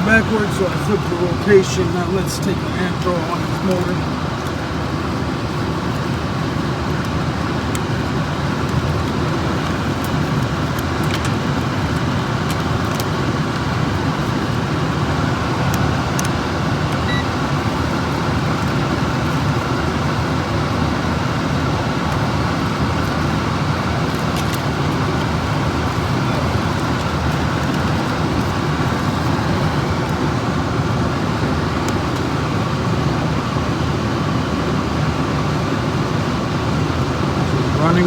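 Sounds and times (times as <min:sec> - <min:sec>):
blower fan rushing air: 0:00.0 - 0:38.0
short faint beep: 0:17.0 - 0:17.3.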